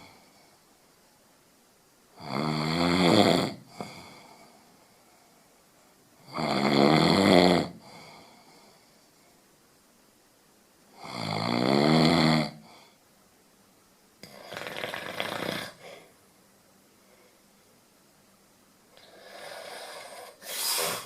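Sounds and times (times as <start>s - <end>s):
person snoring: 0.0s - 0.6s, 2.2s - 4.6s, 6.2s - 8.8s, 11.0s - 13.0s, 14.2s - 16.1s, 19.0s - 21.0s.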